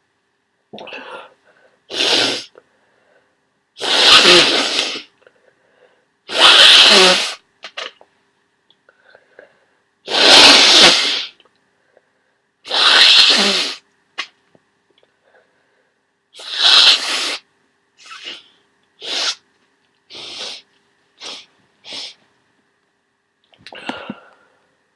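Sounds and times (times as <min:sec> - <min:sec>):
person sneezing wetly: 0:03.8 - 0:05.1, 0:06.3 - 0:07.4, 0:10.1 - 0:11.4, 0:12.7 - 0:13.8, 0:19.0 - 0:19.4.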